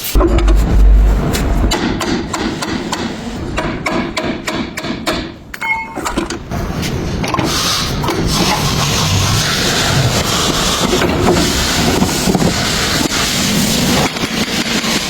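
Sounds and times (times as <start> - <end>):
hammer striking metal: 0.0 - 5.9.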